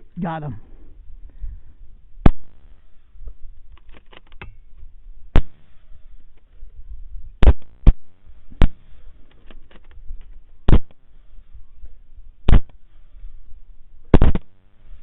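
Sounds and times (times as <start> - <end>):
rifle shots: 2.2 - 2.6, 5.4 - 5.6, 12.5 - 12.7, 14.1 - 14.5.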